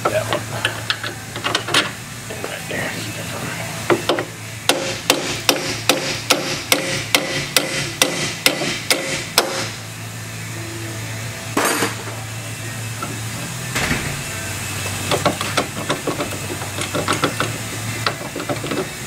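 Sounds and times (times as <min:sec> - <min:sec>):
hammer striking metal: 0:04.7 - 0:09.8
noisy clatter: 0:15.0 - 0:19.0.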